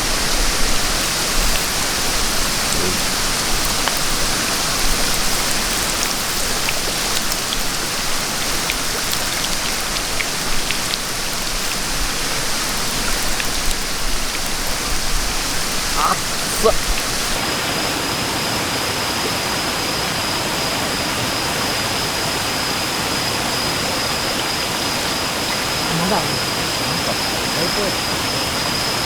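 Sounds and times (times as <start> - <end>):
small ticks and crackles: 0.0 - 17.4
creek flowing: 0.0 - 29.0.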